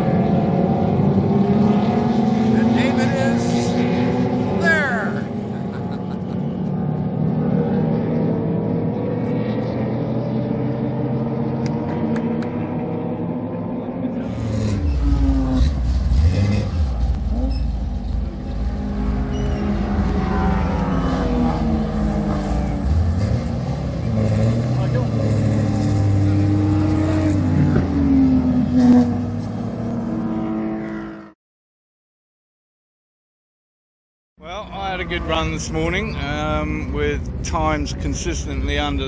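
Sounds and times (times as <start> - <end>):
deep engine rumble revving: 0.0 - 31.0
race car engine: 0.0 - 31.3, 34.5 - 39.0.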